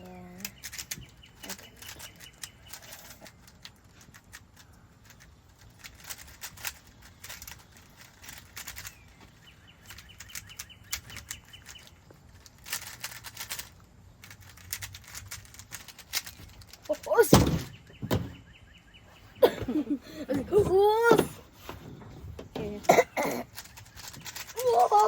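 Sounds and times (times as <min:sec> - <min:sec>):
puzzle cube plastic clicks: 0:00.4 - 0:09.1, 0:09.8 - 0:17.2, 0:22.6 - 0:25.0.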